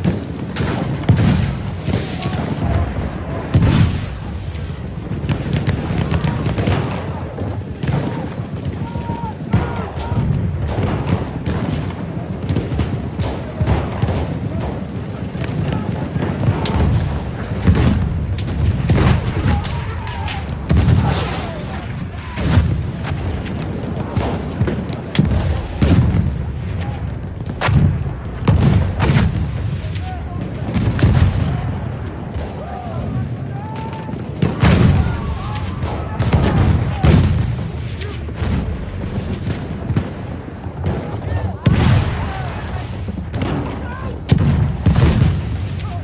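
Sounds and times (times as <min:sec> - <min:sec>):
deep rumble of artillery: 0:00.0 - 0:46.0
gunshots: 0:00.0 - 0:46.0
heavy blasts: 0:00.0 - 0:46.0
heavy booms: 0:00.0 - 0:46.0.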